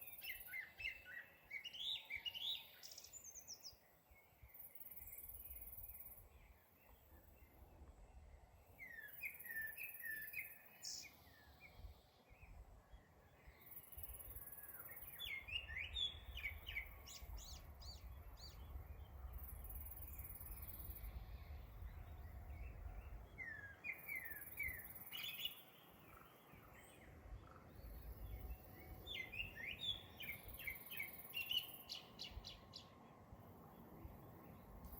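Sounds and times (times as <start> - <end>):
songbird chirping: 0.0 - 34.9
faint low rumble: 15.6 - 24.9, 25.8 - 34.9.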